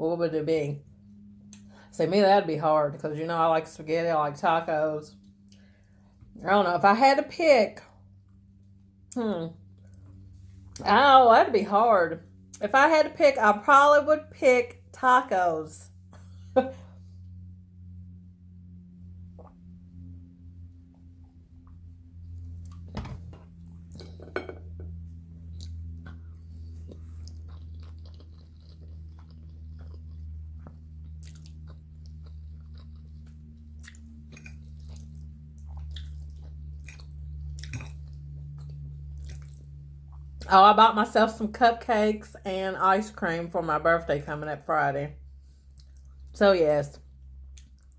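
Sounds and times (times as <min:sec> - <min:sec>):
steady low hum: 0:00.0 - 0:47.9
chewing spaghetti: 0:25.5 - 0:40.5, 0:45.4 - 0:46.4.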